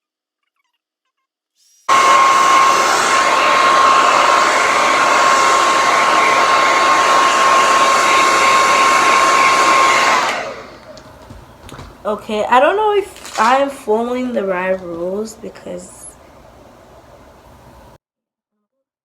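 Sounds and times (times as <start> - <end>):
hair dryer blowing: 1.9 - 18.0.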